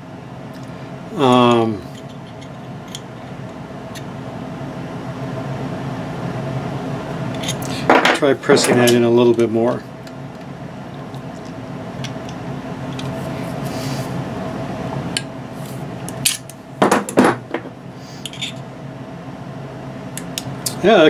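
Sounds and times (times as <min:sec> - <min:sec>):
steady hum: 0:00.0 - 0:21.0.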